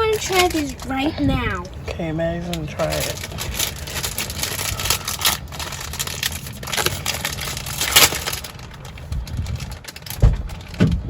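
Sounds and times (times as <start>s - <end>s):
plastic snack bag crinkling: 2.5s - 11.0s.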